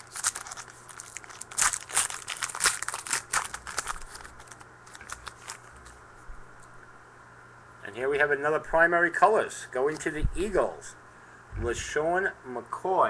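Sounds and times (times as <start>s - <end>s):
card pack wrapper crinkling: 0.0s - 6.0s
cards being handled: 0.0s - 6.0s.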